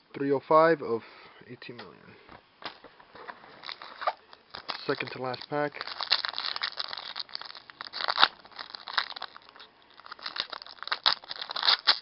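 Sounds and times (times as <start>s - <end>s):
wrapper tearing and crinkling: 3.2s - 12.0s
sharp wrapper snaps: 3.6s - 12.0s.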